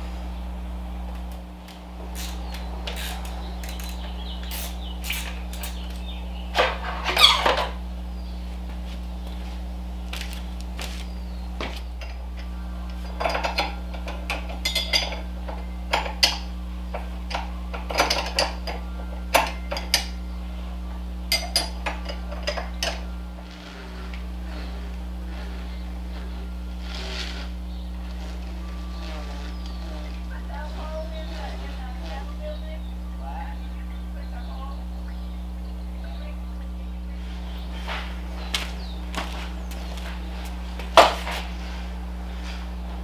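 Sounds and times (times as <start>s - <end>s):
low electrical hum: 0.0s - 43.0s
metal tools clinking and clattering: 2.2s - 7.7s, 11.6s - 20.2s, 21.3s - 24.6s.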